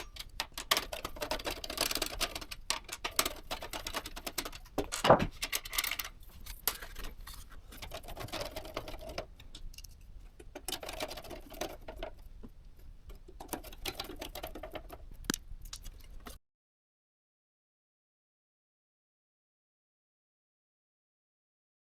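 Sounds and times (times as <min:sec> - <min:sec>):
scraping: 0:00.0 - 0:12.2
plastic and metal parts clicking: 0:00.0 - 0:16.4.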